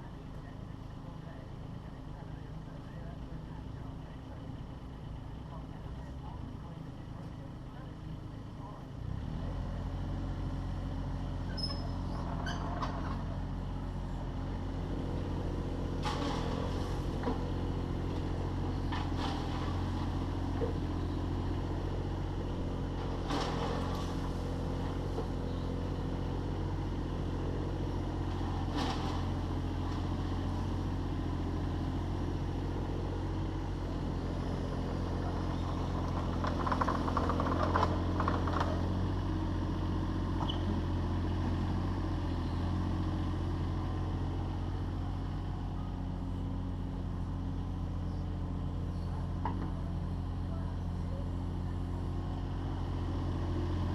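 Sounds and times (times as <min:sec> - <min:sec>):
excavator diesel engine running: 0:00.0 - 0:53.9
clatter: 0:16.0 - 0:17.5, 0:35.2 - 0:39.0.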